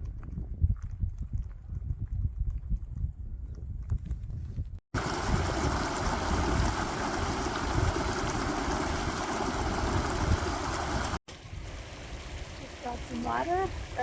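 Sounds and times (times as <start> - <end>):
stream water rushing: 5.0 - 14.0.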